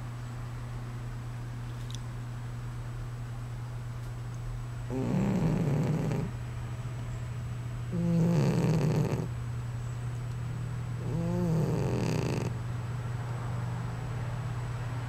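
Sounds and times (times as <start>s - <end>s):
steady low hum: 0.0s - 15.0s
cat snoring: 4.9s - 6.3s, 7.9s - 9.3s, 11.0s - 12.6s.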